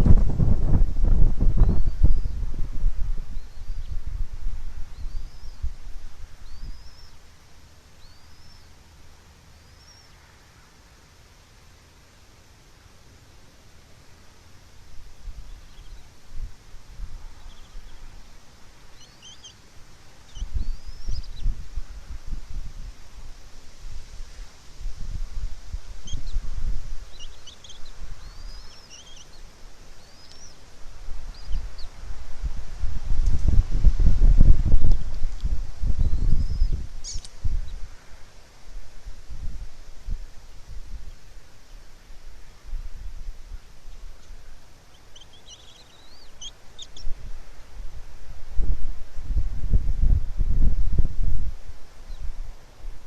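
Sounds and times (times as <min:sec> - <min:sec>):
wind rumble on microphone: 0:00.0 - 0:07.2, 0:14.9 - 0:19.5, 0:20.3 - 0:53.0
bird chirping: 0:04.9 - 0:05.7, 0:06.4 - 0:07.2, 0:08.0 - 0:08.8, 0:09.6 - 0:10.3, 0:15.4 - 0:16.2, 0:17.3 - 0:18.3, 0:18.9 - 0:21.6, 0:25.8 - 0:32.0, 0:35.9 - 0:37.8, 0:43.6 - 0:47.2.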